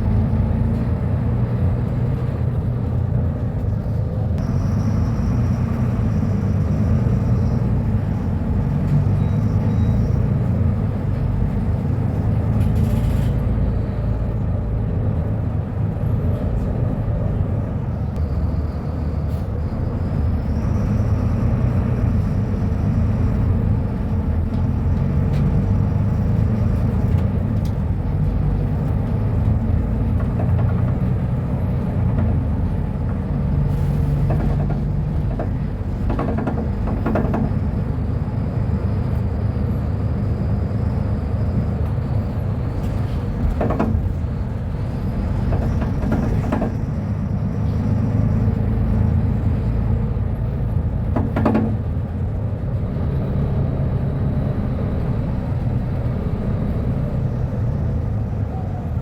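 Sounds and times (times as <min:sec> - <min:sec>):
bus diesel engine running: 0:00.0 - 0:59.0.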